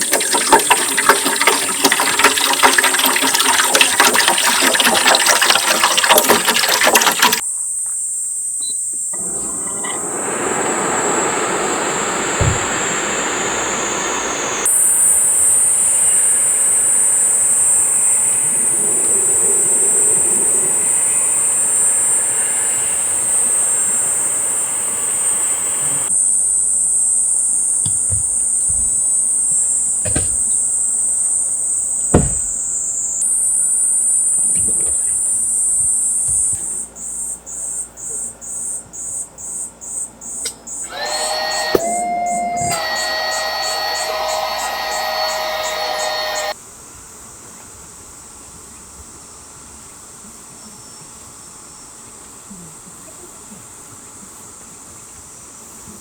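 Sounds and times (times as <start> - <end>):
cicadas buzzing: 0.0 - 52.4
short knocks: 12.3 - 13.1, 27.8 - 29.1, 30.0 - 30.7, 32.1 - 32.7.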